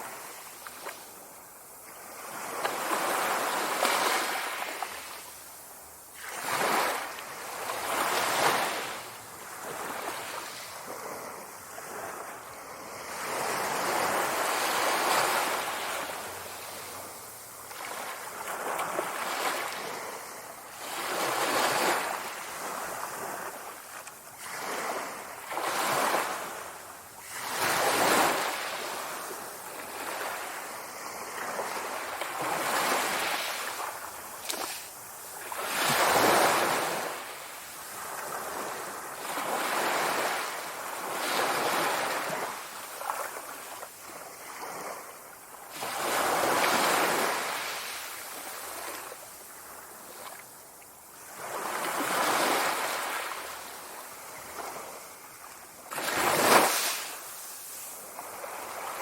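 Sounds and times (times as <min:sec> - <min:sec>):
sea waves breaking: 0:55.9 - 0:59.0.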